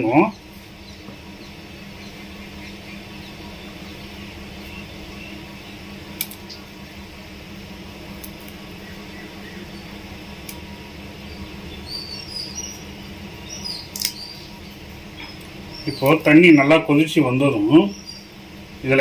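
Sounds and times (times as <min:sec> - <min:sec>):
gas burner hissing: 0:00.0 - 0:19.0
sharp click: 0:13.9 - 0:14.2.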